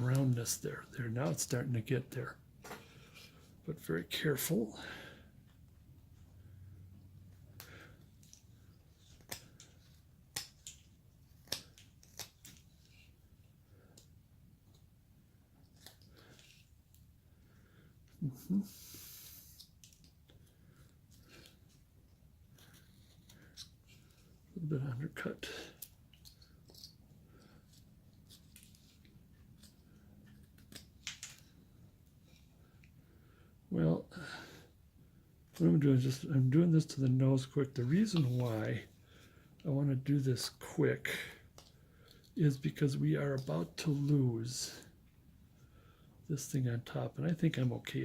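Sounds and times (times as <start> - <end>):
knife carving wood clicks: 10.3 - 12.6.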